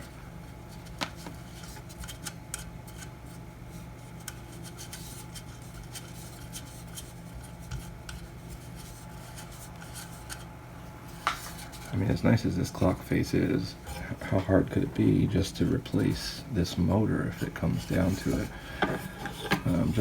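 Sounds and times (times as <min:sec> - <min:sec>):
metal scraping on metal: 0:17.2 - 0:20.0.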